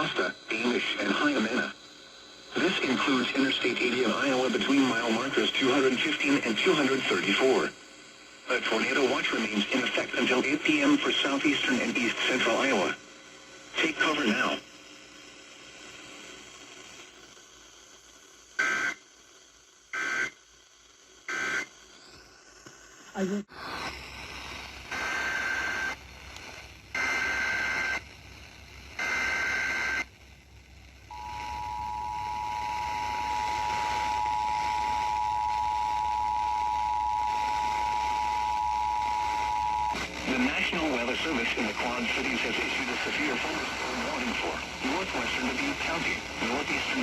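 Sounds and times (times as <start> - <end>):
buzzy data bursts: 23.2 - 30.2, 31.0 - 47.0.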